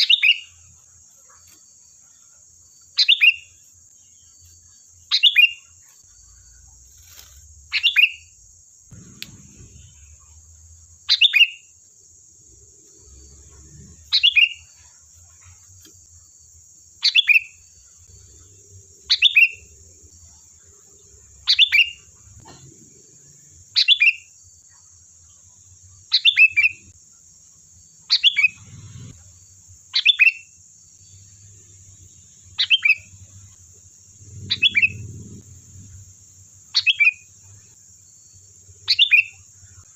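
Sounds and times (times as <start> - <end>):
bird giving downward-sweeping call: 34.2 - 36.0.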